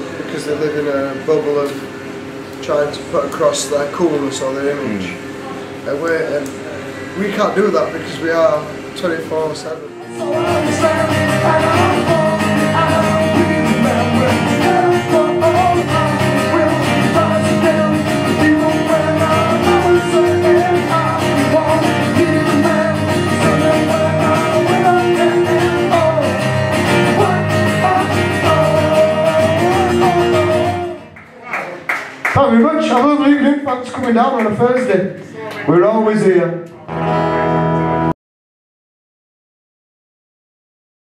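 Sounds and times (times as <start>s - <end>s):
live guitar music: 9.9s - 31.2s, 36.8s - 38.1s
person singing: 10.0s - 31.1s.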